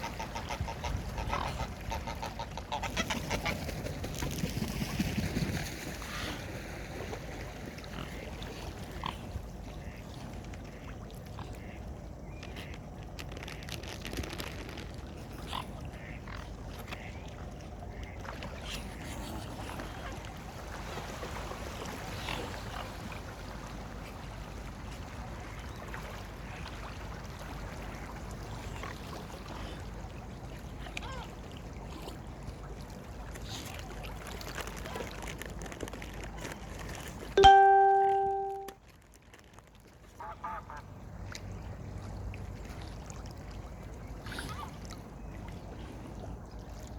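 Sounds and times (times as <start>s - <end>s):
duck and bird calls: 0.0s - 3.7s, 15.4s - 17.2s
wind and water rumble: 0.0s - 46.9s
small splashes: 12.4s - 38.4s.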